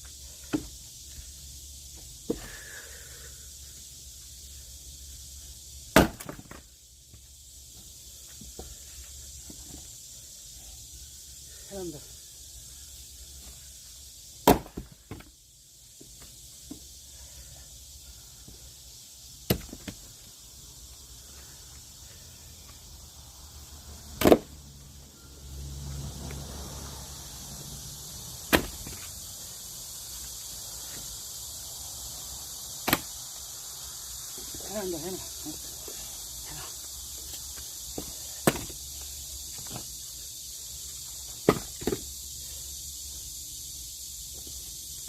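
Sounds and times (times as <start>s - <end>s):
axe blows splitting logs: 5.9s - 6.6s, 14.4s - 15.0s, 24.2s - 24.5s, 28.5s - 29.1s, 32.8s - 33.1s, 38.4s - 38.8s.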